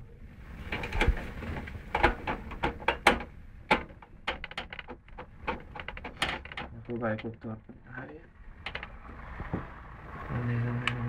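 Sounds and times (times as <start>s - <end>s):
computer parts clicking and knocking: 0.7s - 9.0s.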